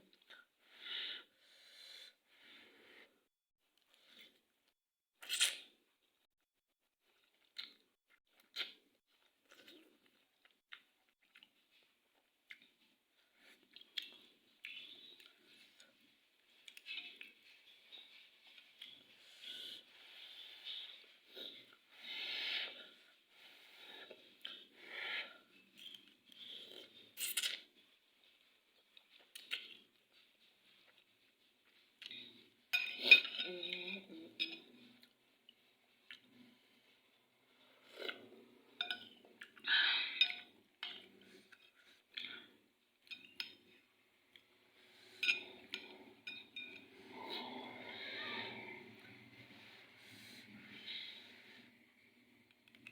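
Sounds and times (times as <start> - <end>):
eating and breathing noise: 0.1 - 4.6, 8.5 - 33.3, 34.6 - 42.9, 43.6 - 52.9
cutlery clinking against bowl: 32.8 - 34.7, 38.8 - 39.2, 45.2 - 46.9.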